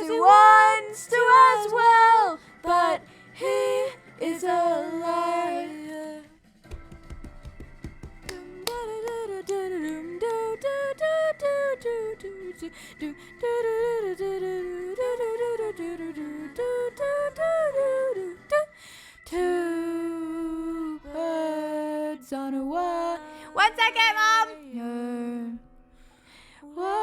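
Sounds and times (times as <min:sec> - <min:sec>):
person humming a melody: 0:20.0 - 0:25.7.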